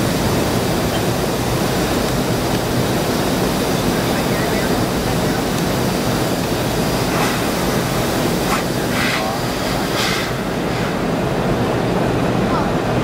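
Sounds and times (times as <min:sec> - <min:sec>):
jet engines and airflow in cabin: 0:00.0 - 0:13.0.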